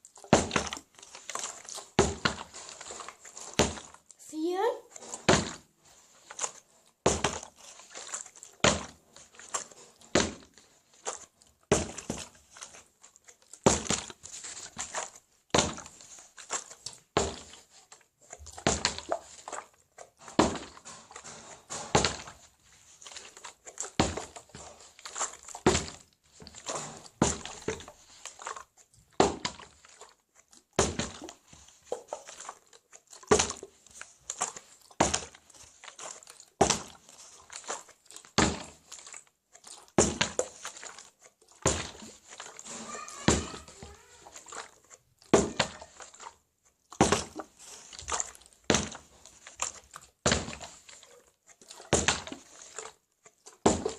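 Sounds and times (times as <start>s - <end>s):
object thunking on hard surface: 5.1s - 5.6s, 20.3s - 22.4s.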